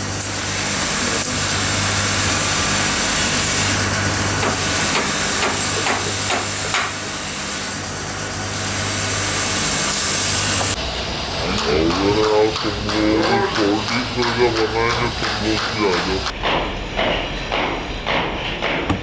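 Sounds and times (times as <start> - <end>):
factory machinery humming: 0.0 - 19.0
sharp knocks: 4.4 - 7.0, 13.6 - 19.0.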